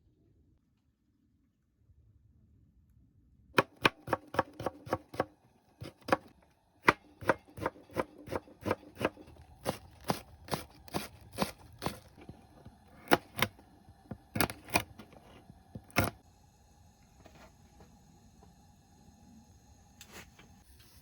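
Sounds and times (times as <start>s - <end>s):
knife chopping on cutting board: 3.6s - 16.2s.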